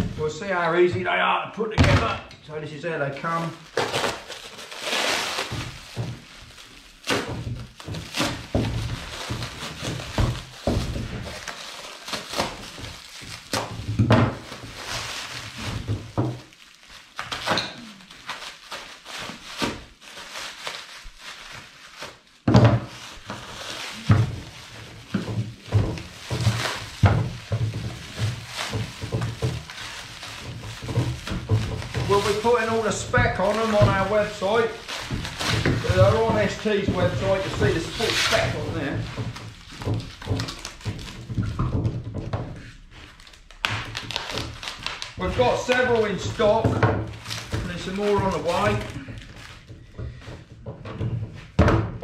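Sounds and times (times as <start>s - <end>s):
packing material rustling: 2.9s - 51.6s
heavy parts thudding: 22.5s - 42.9s.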